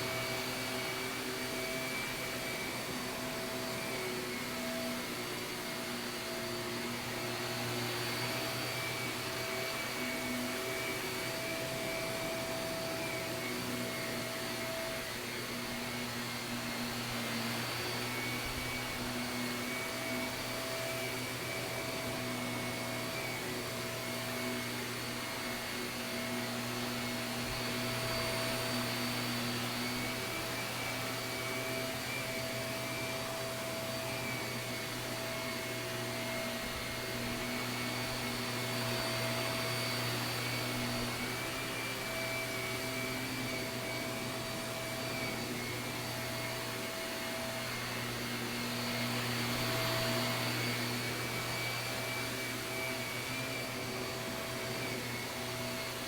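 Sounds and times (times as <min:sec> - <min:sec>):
vacuum cleaner running on carpet: 0:00.0 - 0:56.0.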